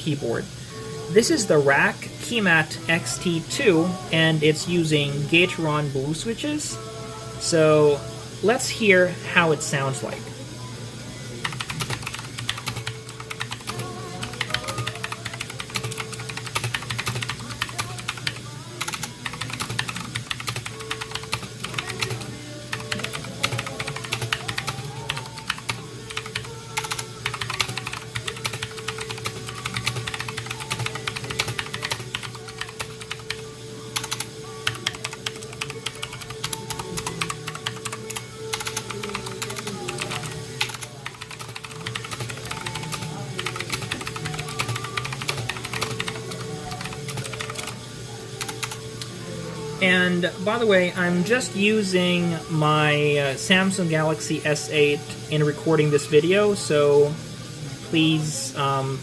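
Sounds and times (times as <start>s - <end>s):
fast typing on mechanical keyboard: 11.4s - 33.4s, 34.0s - 47.8s, 48.4s - 48.8s.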